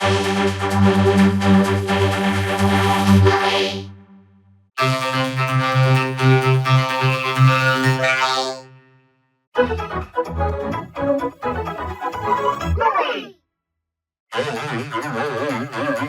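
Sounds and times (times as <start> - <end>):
buzzy vocoder chord: 4.8 - 9.0.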